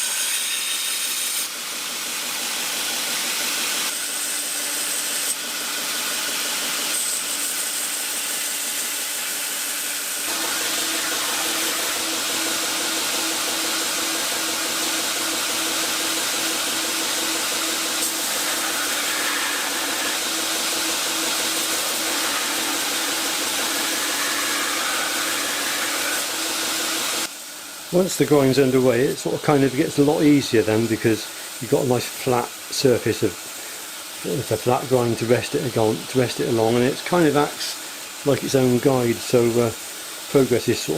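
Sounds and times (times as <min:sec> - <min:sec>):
power grinder grinding metal: 0:00.0 - 0:27.3.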